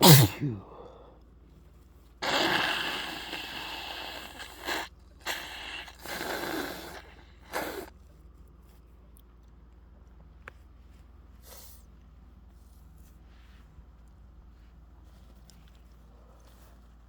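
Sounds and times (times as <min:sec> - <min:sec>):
person breathing through nose: 0:02.2 - 0:07.9.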